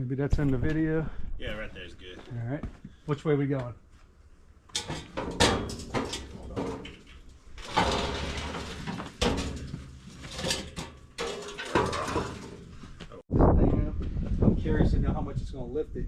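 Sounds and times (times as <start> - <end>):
metal scraping: 4.7 - 13.2
metal parts knocking: 4.8 - 12.7.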